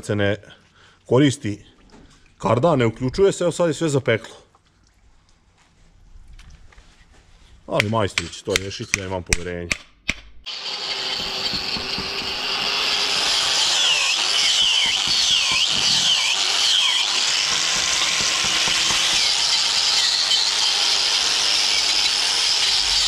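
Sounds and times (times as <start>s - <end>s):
power tool whining: 10.5s - 23.0s.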